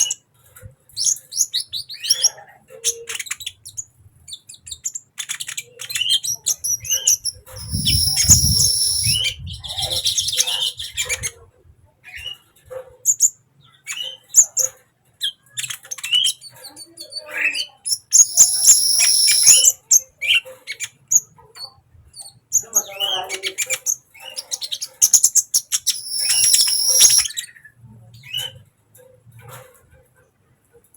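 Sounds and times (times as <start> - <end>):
bird chirping and trilling: 1.0 - 11.3, 17.3 - 21.3, 22.2 - 27.7.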